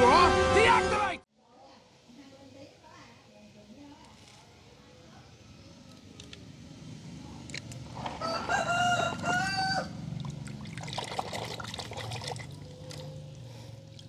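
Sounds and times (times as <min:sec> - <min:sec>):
rooster crowing: 0:08.2 - 0:10.2.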